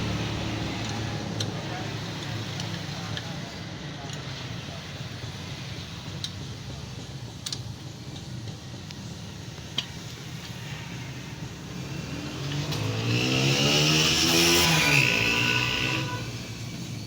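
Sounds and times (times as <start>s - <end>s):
engine revving: 0.0s - 1.5s, 11.7s - 16.9s.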